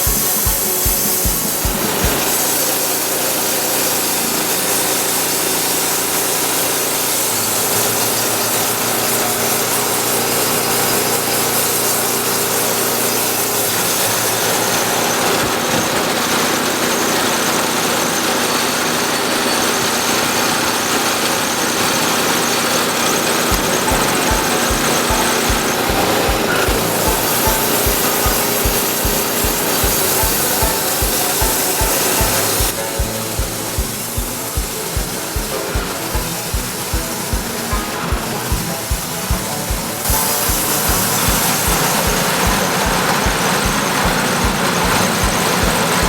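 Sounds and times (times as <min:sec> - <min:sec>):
band saw cutting through log: 0:00.0 - 0:46.0.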